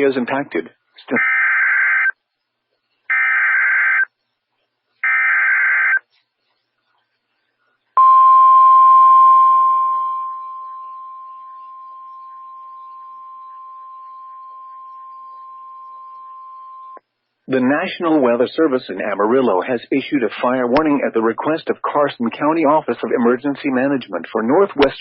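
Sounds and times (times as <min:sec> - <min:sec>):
steady warning alarm tone: 0:08.0 - 0:17.0.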